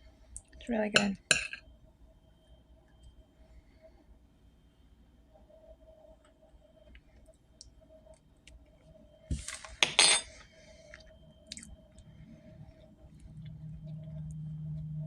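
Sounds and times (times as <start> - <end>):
faint steady hum: 0.0 - 15.0
cutlery clinking on a plate: 1.0 - 1.6, 9.8 - 10.3.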